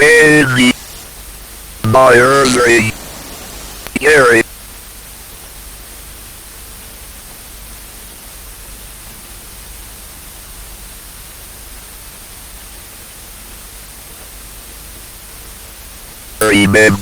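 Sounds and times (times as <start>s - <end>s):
static hiss: 0.0s - 1.2s, 1.8s - 4.4s, 16.4s - 17.0s.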